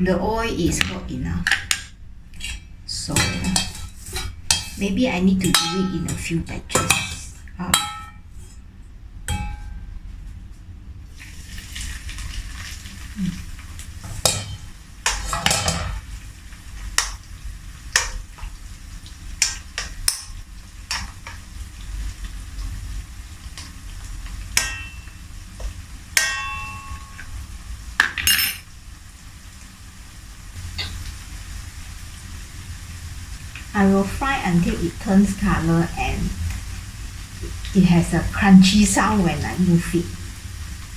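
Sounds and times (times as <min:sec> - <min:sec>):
utensils clinking on cookware: 0:00.7 - 0:08.6, 0:09.3 - 0:09.9, 0:14.0 - 0:16.0, 0:24.6 - 0:27.4, 0:28.0 - 0:28.7
fish sizzling in hot oil: 0:01.7 - 0:06.0, 0:11.1 - 0:40.9.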